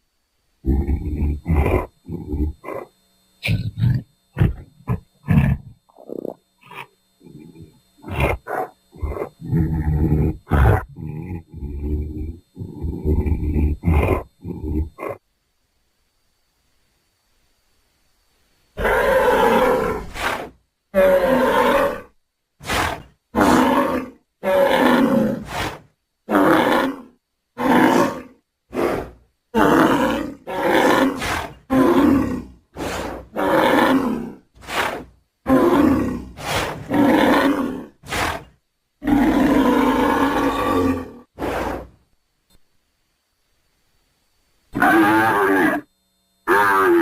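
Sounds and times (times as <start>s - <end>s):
buffalo bellows and grunts: 0.6s - 15.2s, 26.3s - 41.9s, 46.5s - 47.0s.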